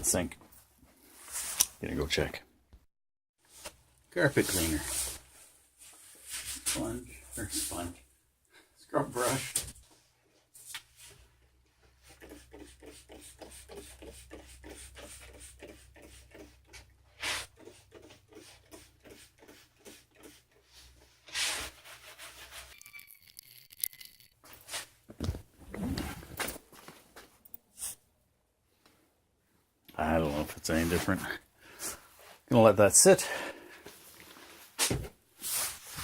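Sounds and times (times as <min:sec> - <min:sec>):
rubbing and handling noises: 0:09.2 - 0:28.0.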